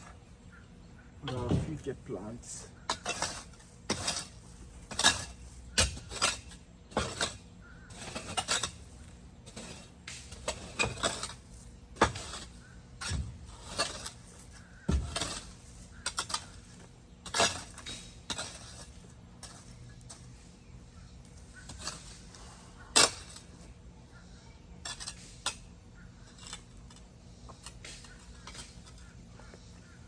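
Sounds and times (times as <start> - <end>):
metal tool striking and scraping: 2.8 - 20.4, 21.3 - 22.3, 24.8 - 29.6.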